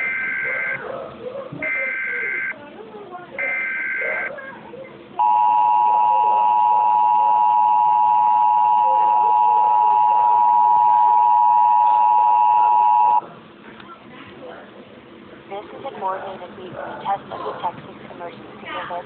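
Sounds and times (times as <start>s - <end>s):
two-tone alert signal: 1.6s - 2.6s, 3.4s - 4.2s, 5.2s - 13.2s.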